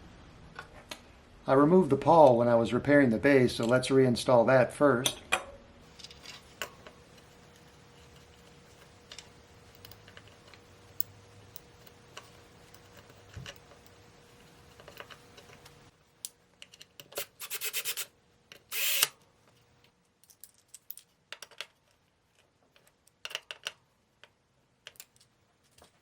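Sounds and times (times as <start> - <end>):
rapid scraping strokes: 5.9 - 15.9.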